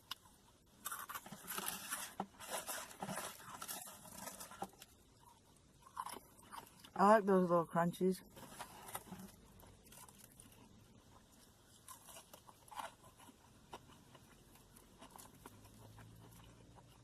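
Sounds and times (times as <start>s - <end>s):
chewing crunchy fried batter: 0.0s - 7.0s, 8.3s - 17.0s.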